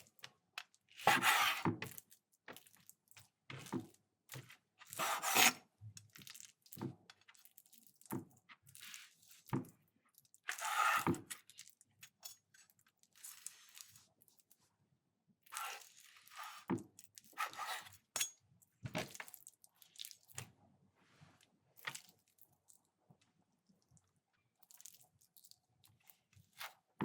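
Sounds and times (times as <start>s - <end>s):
knife slicing raw meat: 1.0s - 1.7s, 4.9s - 5.6s, 10.5s - 11.1s, 17.4s - 18.3s.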